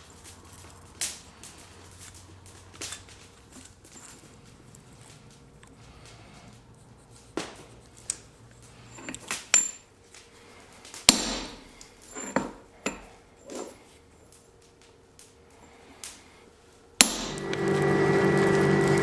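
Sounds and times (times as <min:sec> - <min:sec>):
hammer striking steel on anvil: 0:11.1 - 0:13.1, 0:17.0 - 0:17.8.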